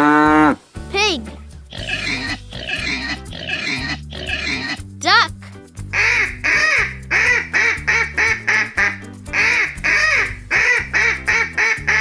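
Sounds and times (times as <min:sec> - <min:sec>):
background music: 0:00.0 - 0:12.0
duck quacking: 0:01.7 - 0:04.8, 0:05.9 - 0:12.0.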